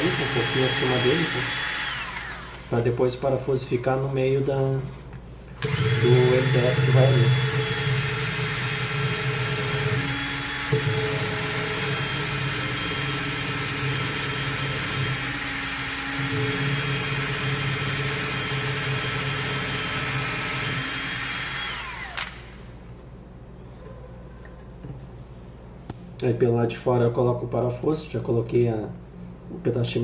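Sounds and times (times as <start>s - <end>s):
electric drill boring: 0.0s - 22.7s.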